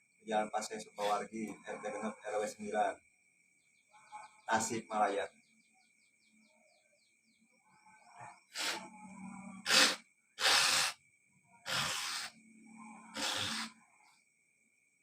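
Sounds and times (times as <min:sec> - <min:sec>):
person snorting through nose: 0:08.5 - 0:08.9, 0:09.6 - 0:11.0, 0:11.7 - 0:12.3, 0:13.2 - 0:13.7.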